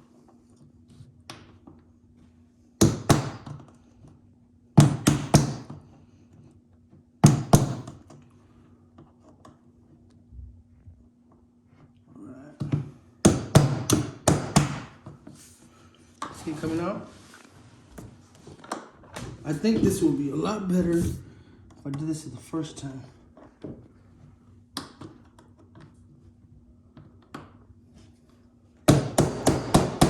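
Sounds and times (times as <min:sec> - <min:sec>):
hammer tapping a nail: 0:02.8 - 0:03.7, 0:04.8 - 0:05.8, 0:07.2 - 0:08.0, 0:12.7 - 0:15.1, 0:28.8 - 0:30.0.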